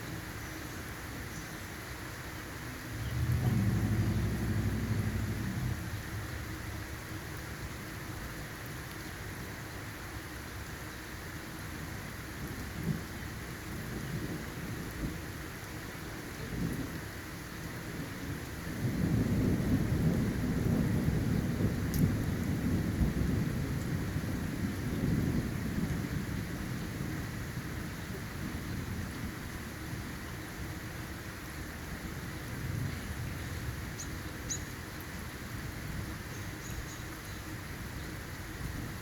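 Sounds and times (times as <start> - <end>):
rain hissing: 0.0 - 39.0
thunder rumble: 2.8 - 8.4, 18.0 - 29.2.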